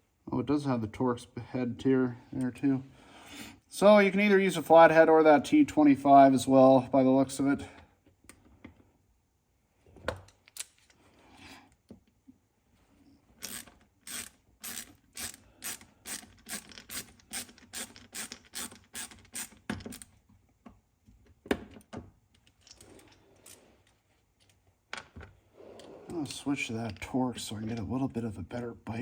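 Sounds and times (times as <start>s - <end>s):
hand ratchet clicking: 13.4s - 20.1s.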